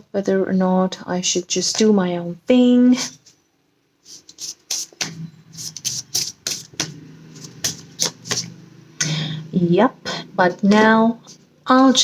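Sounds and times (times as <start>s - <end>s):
cards tapping on a table: 5.9s - 8.6s.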